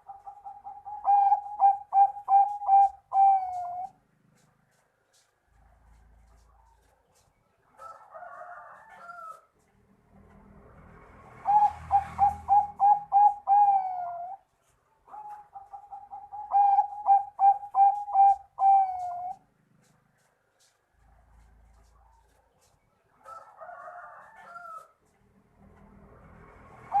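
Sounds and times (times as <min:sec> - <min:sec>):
dove cooing: 0:00.0 - 0:04.5, 0:11.4 - 0:14.5, 0:15.1 - 0:20.0, 0:26.8 - 0:27.0.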